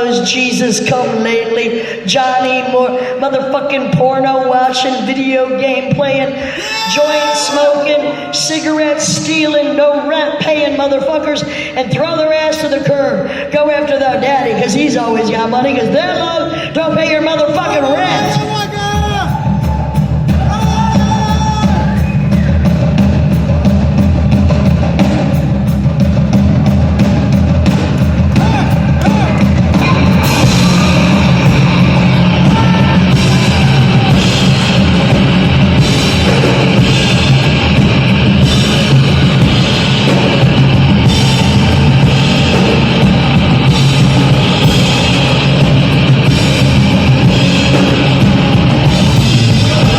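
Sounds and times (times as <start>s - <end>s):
live rock band playing: 17.9s - 49.9s.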